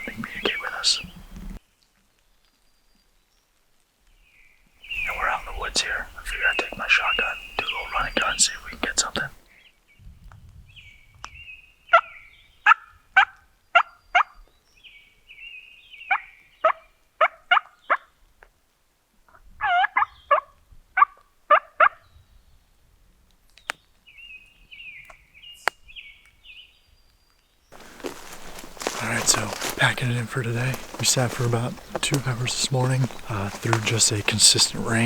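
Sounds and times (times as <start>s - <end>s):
turkey yelping: 19.6s - 22.0s.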